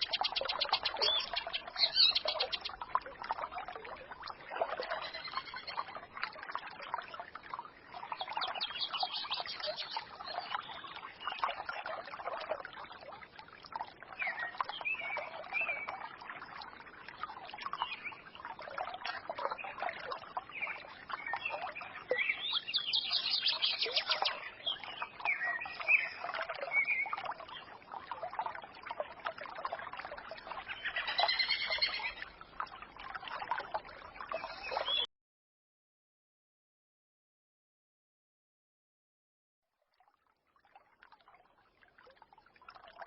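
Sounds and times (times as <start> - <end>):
songbirds chirping and twittering: 0.0 - 12.6, 13.8 - 35.1
trickling stream: 0.0 - 35.1, 39.7 - 43.0.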